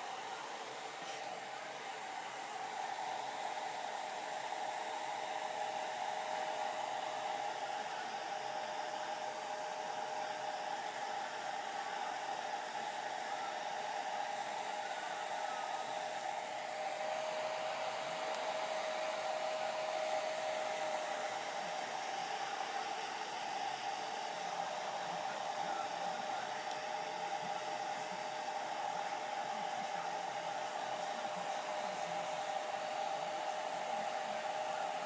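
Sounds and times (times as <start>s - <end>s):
hair dryer running: 0.0s - 35.0s.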